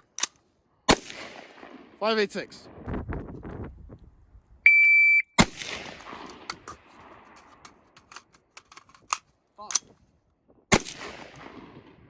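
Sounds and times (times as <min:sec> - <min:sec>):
shot timer beep: 0:04.7 - 0:05.4
loud gunshot: 0:05.4 - 0:06.5
distant gunshots: 0:05.4 - 0:07.3, 0:10.7 - 0:12.0.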